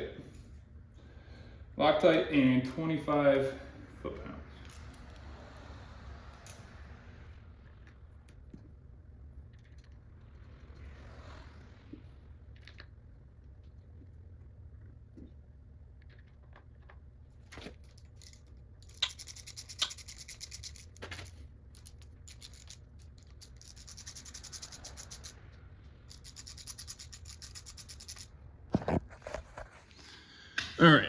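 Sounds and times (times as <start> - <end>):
ratchet wrench clicking: 17.9 - 28.3.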